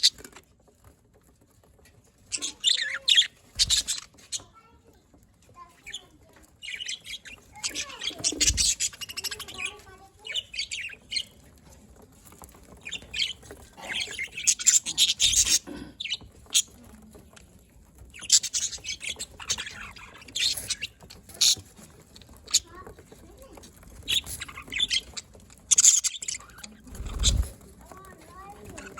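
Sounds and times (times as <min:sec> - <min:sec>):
budgerigars chattering and chirping: 0:02.3 - 0:04.5, 0:05.7 - 0:11.4, 0:12.7 - 0:17.0, 0:18.0 - 0:27.6.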